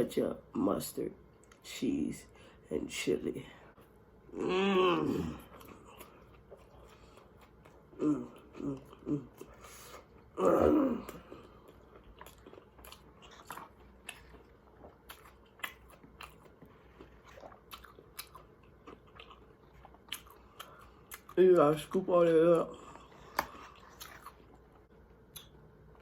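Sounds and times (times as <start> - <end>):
chewing and biting food: 5.4 - 10.4, 11.0 - 22.1, 22.8 - 26.0.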